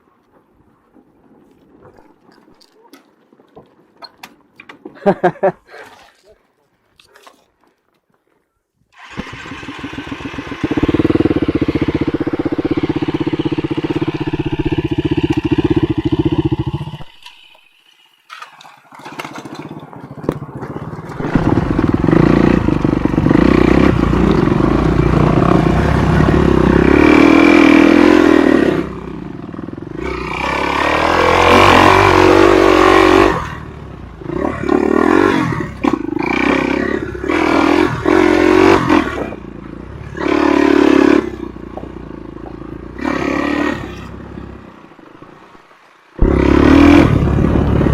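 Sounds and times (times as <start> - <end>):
dirt bike engine revving: 9.0 - 17.7, 20.5 - 44.7, 46.2 - 47.9.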